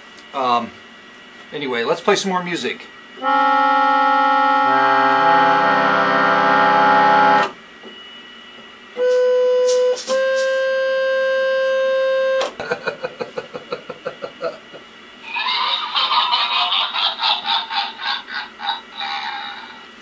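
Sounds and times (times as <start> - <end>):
organ-tone keyboard notes: 3.2 - 7.5.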